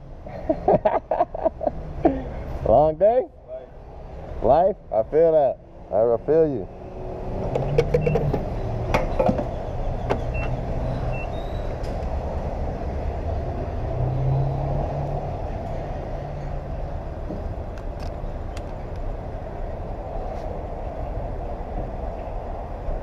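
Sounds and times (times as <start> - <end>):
road and wind noise: 0.0 - 23.0.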